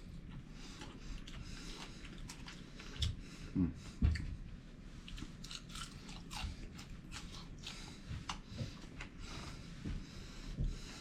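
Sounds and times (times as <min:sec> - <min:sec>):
person chewing food: 0:00.0 - 0:04.4, 0:05.0 - 0:11.0.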